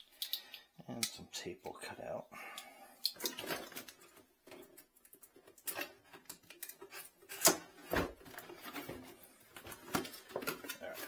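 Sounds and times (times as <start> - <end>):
cardboard packaging rustling: 3.3 - 11.0.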